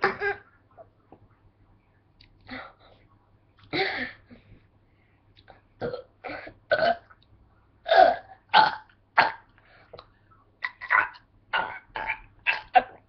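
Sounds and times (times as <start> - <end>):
person burping: 5.8 - 7.1, 7.8 - 9.5, 10.6 - 13.0.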